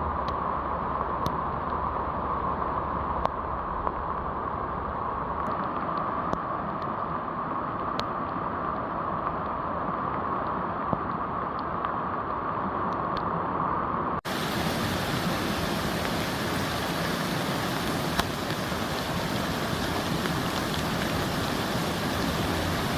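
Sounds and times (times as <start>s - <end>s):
floodwater rushing: 14.3s - 22.9s.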